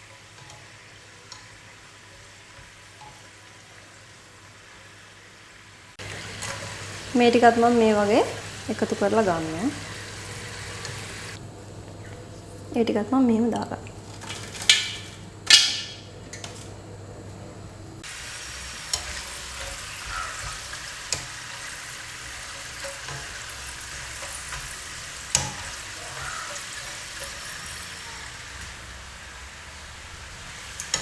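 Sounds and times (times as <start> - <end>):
food sizzling in hot oil: 0.0 - 11.4, 18.0 - 31.0.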